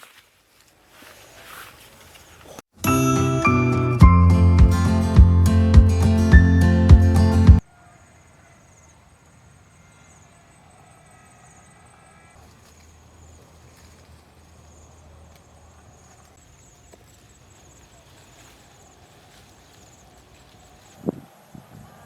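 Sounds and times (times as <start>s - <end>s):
music: 2.8s - 7.6s.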